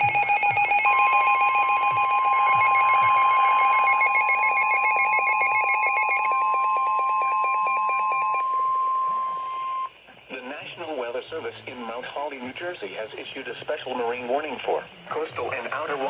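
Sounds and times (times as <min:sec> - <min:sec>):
steady warning alarm tone: 0:00.0 - 0:10.0
warbling electronic alarm: 0:00.0 - 0:10.0.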